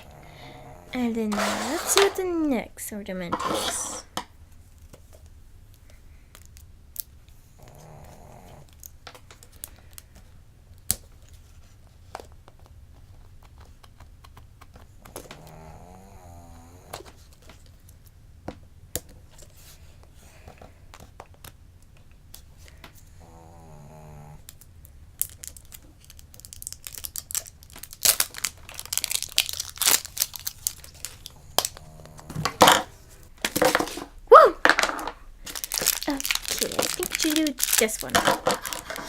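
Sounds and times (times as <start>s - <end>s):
packaging clicks and snaps: 24.5s - 34.0s, 34.6s - 39.0s
plastic packaging crinkling and tearing: 25.2s - 34.1s, 34.7s - 39.0s.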